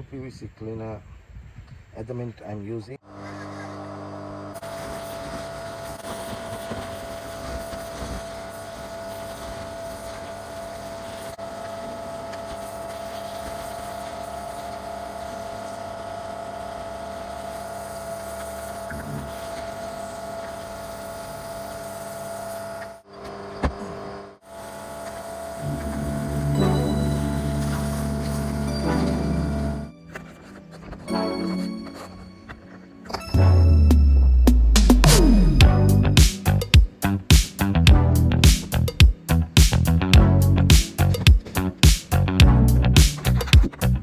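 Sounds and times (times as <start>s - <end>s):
pressure washer pump whining: 4.3s - 23.5s, 24.5s - 30.0s
short sharp sound: 33.4s - 39.9s.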